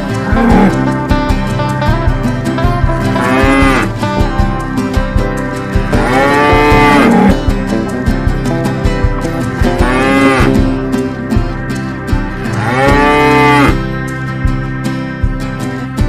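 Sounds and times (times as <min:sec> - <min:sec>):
background music with steady beat: 0:00.0 - 0:16.0
cow mooing: 0:00.2 - 0:00.9, 0:03.2 - 0:03.9, 0:06.0 - 0:07.4, 0:09.8 - 0:10.6, 0:12.5 - 0:13.8.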